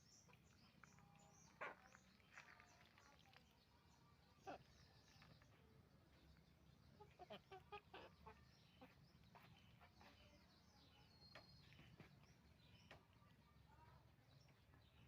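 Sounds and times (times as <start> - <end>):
chickens clucking: 6.9 - 10.3.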